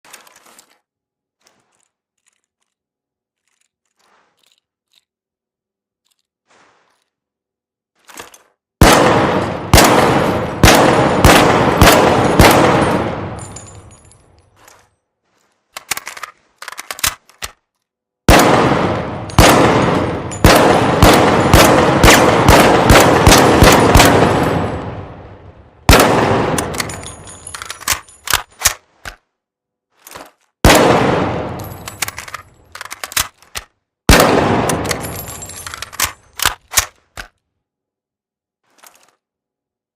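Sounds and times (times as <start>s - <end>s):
rifle shots echoing: 8.8s - 14.0s, 18.3s - 27.5s, 30.6s - 32.6s, 34.1s - 36.2s.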